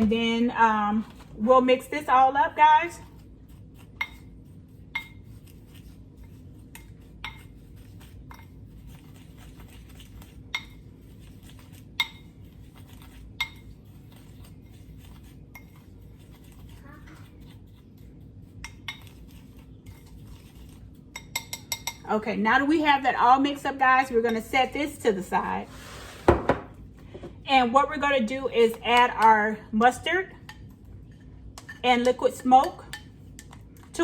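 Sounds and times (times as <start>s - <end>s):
low steady hum: 0.0s - 34.0s
utensil clinking against bowl: 6.7s - 7.6s, 19.9s - 22.2s, 30.3s - 34.0s.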